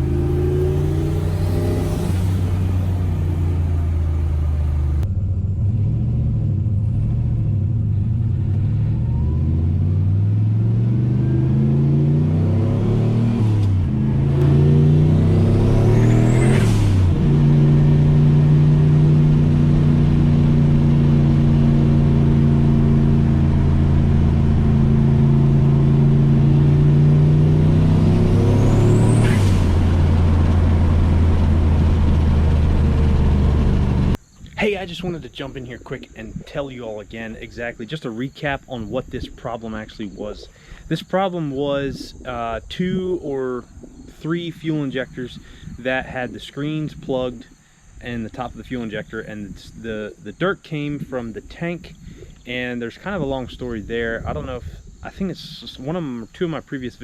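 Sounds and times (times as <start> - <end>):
truck engine accelerating through gears: 0.0 - 34.2.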